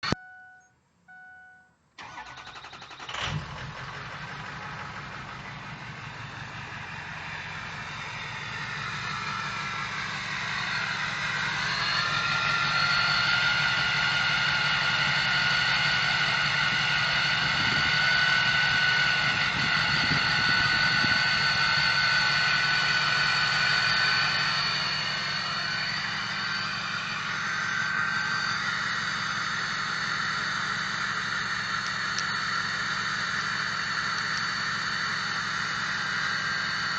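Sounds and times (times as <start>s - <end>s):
diesel engine starting and idling: 2.0s - 36.9s
turbo whistle: 17.7s - 36.9s.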